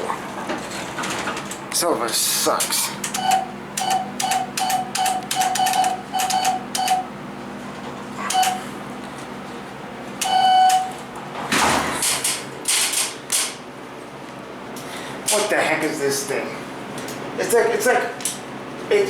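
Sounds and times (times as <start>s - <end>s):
elevator button clicks: 3.0s - 7.1s, 10.2s - 11.0s.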